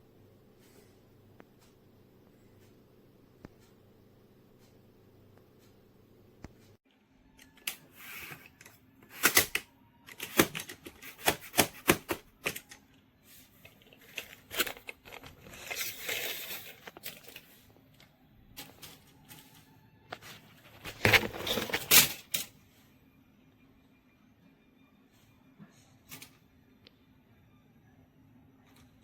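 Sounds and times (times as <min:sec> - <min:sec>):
scraping or rustling: 0:13.3 - 0:17.8, 0:18.6 - 0:22.5.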